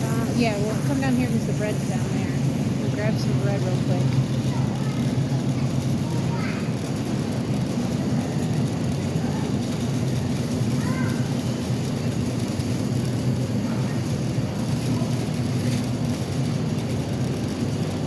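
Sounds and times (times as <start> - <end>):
low droning rumble: 0.0 - 10.9
faint distant voices: 0.0 - 12.1, 13.1 - 16.1.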